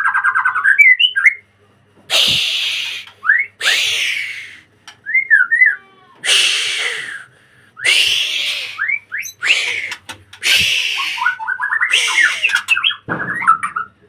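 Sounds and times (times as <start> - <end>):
bird whistling: 0.1 - 1.4, 2.1 - 13.9
harsh rasping bird calls: 2.1 - 4.7, 5.4 - 13.9.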